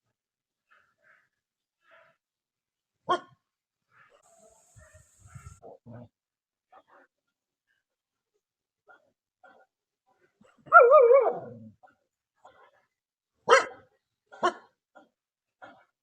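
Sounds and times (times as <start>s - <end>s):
dog barking: 3.1s - 3.4s, 10.6s - 11.7s, 13.4s - 14.7s
dog wavering cry: 10.7s - 11.7s.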